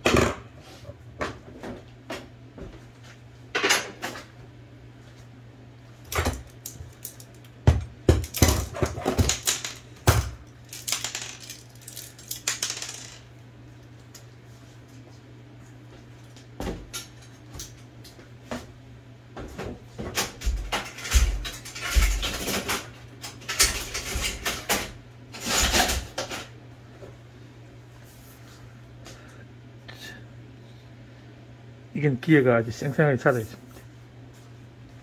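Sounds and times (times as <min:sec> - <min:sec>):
small metal parts clinking: 0:10.6 - 0:13.3.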